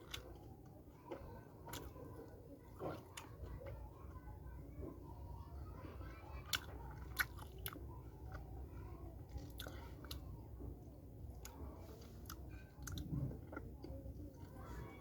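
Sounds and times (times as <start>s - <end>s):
crunchy chewing of clay: 0.0s - 3.8s, 6.3s - 8.6s, 9.2s - 10.3s, 11.4s - 14.7s.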